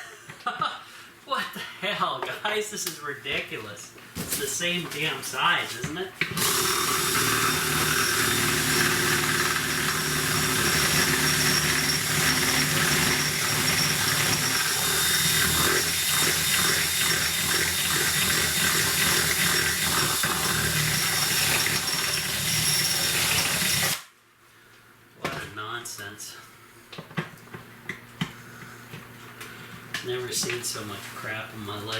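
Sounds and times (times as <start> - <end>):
electric drill boring plastic: 6.3 - 24.0.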